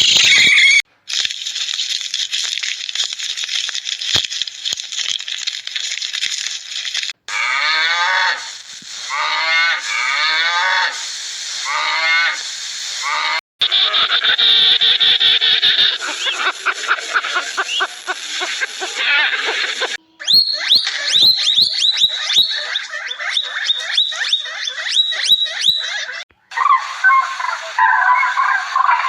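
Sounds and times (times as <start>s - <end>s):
hissy crackling noise: 0.0s - 7.2s, 8.0s - 20.0s, 26.8s - 29.0s
large mammal drawn-out calls: 7.3s - 29.0s.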